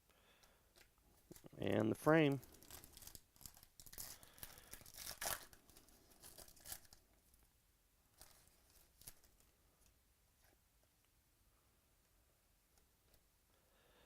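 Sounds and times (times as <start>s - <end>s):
wrappers crinkling: 1.3s - 7.4s, 8.2s - 9.5s.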